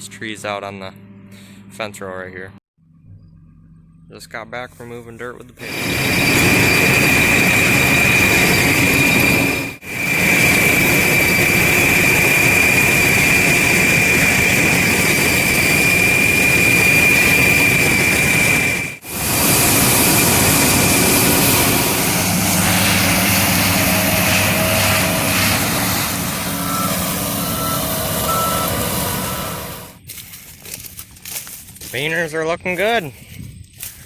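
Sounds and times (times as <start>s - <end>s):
farm machinery running: 4.7s - 32.0s
high steady whine: 5.6s - 30.0s
short repeated beeps: 26.4s - 29.9s.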